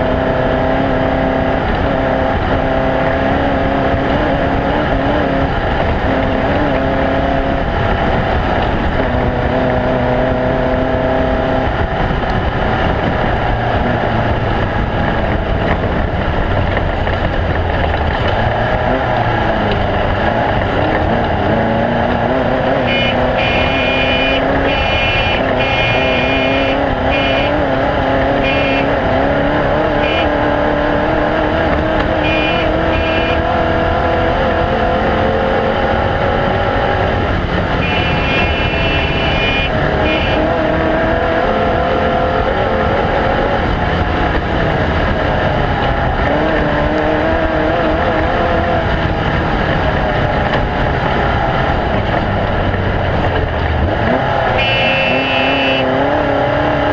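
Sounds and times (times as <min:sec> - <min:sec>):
constant loud noise: 0:00.0 - 0:56.9
race car engine revving: 0:00.0 - 0:56.9
high whine: 0:22.4 - 0:27.8, 0:37.7 - 0:40.7, 0:54.4 - 0:55.9.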